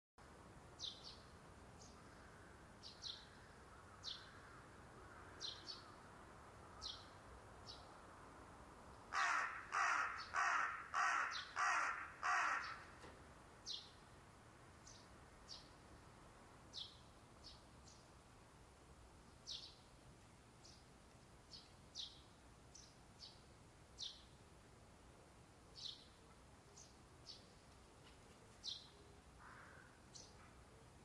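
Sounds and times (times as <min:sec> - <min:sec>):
crow cawing: 0:09.1 - 0:12.9, 0:29.4 - 0:30.0.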